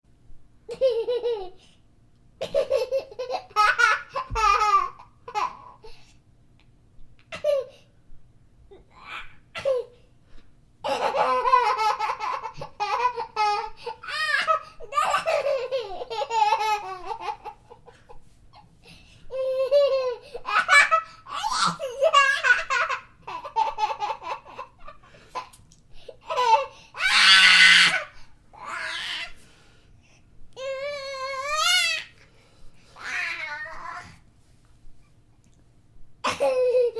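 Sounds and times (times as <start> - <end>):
baby giggling: 10.9 - 18.7
baby squealing with laughter: 26.3 - 29.4.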